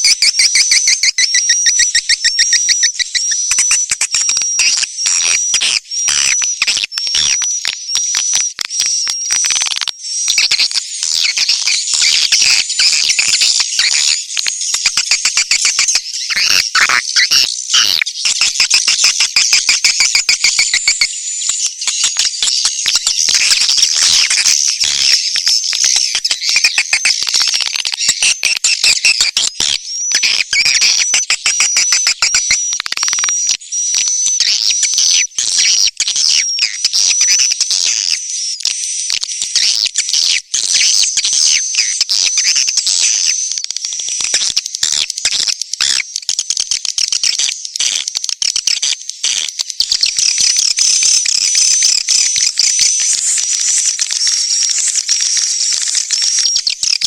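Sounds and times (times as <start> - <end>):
swiftlets chirping and trilling: 10.3 - 32.8, 46.6 - 57.0.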